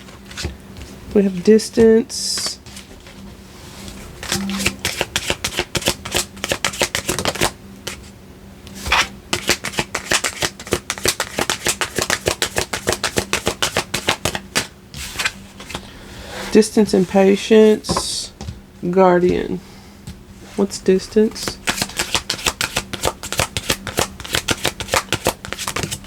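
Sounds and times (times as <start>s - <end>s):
cards being shuffled: 4.2s - 8.0s, 8.9s - 15.8s, 21.3s - 26.0s.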